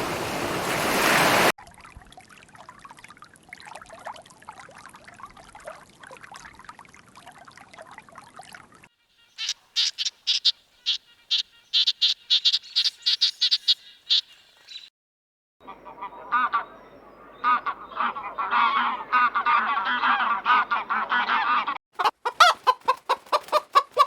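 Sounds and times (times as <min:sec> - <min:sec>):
high sharp animal calls: 0:09.3 - 0:14.3.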